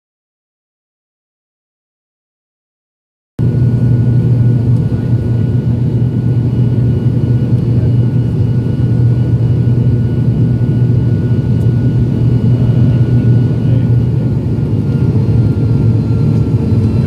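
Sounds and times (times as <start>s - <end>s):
airliner engines droning in cabin: 3.4s - 17.0s.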